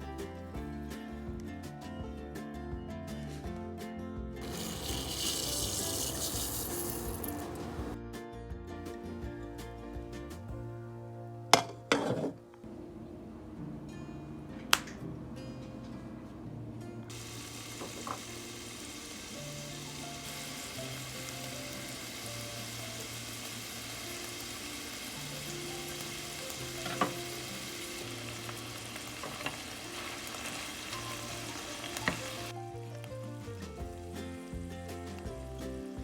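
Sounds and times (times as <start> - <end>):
background music: 0.0 - 36.0
food sizzling in a pan: 4.4 - 8.0, 17.1 - 36.0.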